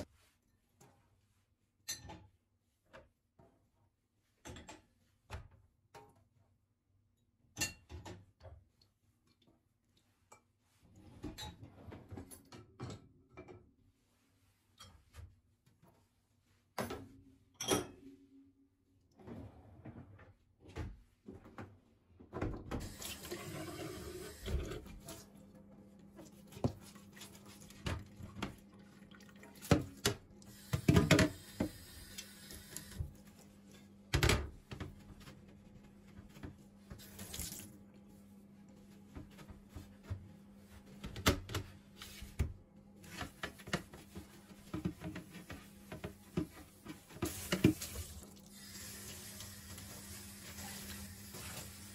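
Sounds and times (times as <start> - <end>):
tap running into sink: 29.6 - 33.1, 47.2 - 48.2.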